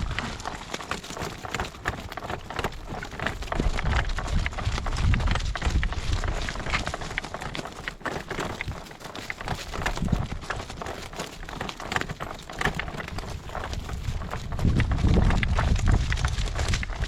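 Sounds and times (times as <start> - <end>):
wind buffeting microphone: 0.0 - 0.5, 2.5 - 7.5, 9.4 - 10.8, 12.6 - 17.0
horse hooves trotting: 0.0 - 17.0.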